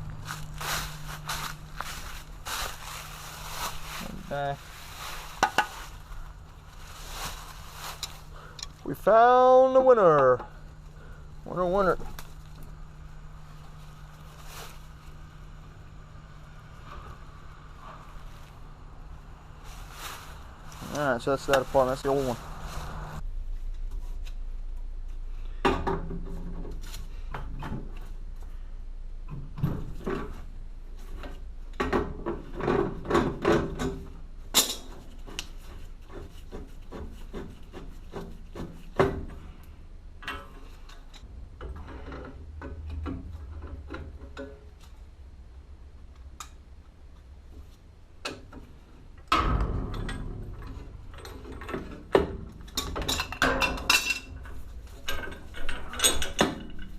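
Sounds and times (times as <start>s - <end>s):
hands and tools handling parts: 0.0s - 9.0s, 29.3s - 45.1s, 46.1s - 56.9s.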